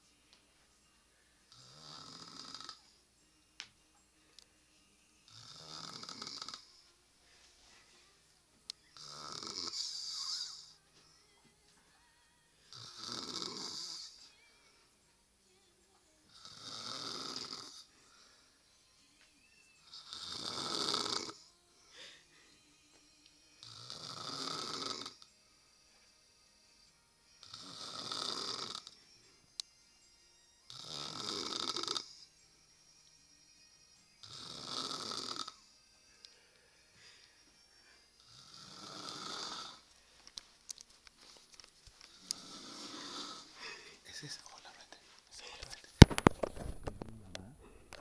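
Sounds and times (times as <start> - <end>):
woman snoring: 1.5 - 2.9, 5.3 - 6.9, 9.0 - 10.8, 12.7 - 14.4, 16.3 - 18.5, 19.8 - 22.3, 23.6 - 25.3, 27.4 - 29.0, 30.7 - 32.3, 34.2 - 35.8, 37.1 - 39.9, 42.1 - 44.3.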